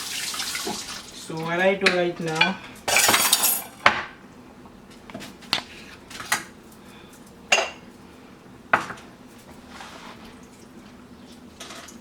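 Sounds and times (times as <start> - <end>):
utensils clinking against dishes: 1.8 - 3.8.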